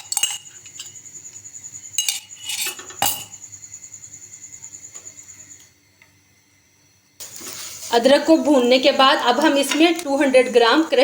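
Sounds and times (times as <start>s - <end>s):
metal spoon scraping a pan: 0.0s - 1.1s, 2.0s - 3.4s.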